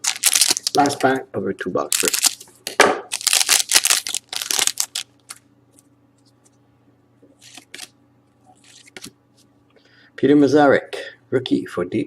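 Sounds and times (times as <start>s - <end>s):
card pack wrapper tearing and crinkling: 0.0s - 1.0s, 1.9s - 2.5s, 3.1s - 5.4s, 7.4s - 7.9s
cards rustling when handled: 0.0s - 1.0s, 1.9s - 2.5s, 3.1s - 5.4s, 7.4s - 7.9s, 8.6s - 9.1s.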